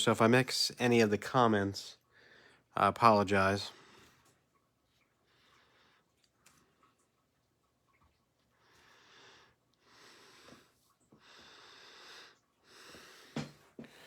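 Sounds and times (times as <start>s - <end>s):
soft slow breathing: 2.0s - 2.8s, 3.7s - 4.4s, 5.0s - 7.1s, 8.4s - 14.0s.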